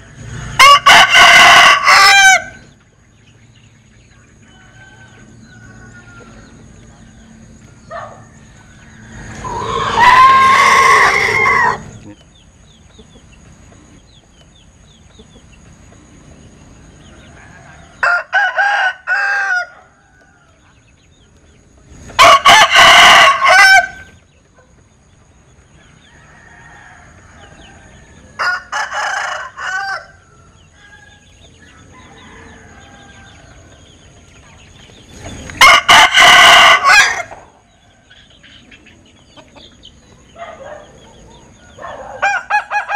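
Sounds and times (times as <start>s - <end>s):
rooster crowing: 0.0s - 2.8s, 4.3s - 12.0s, 17.0s - 20.7s, 22.2s - 24.2s, 25.9s - 34.0s, 35.6s - 38.1s, 40.9s - 42.9s.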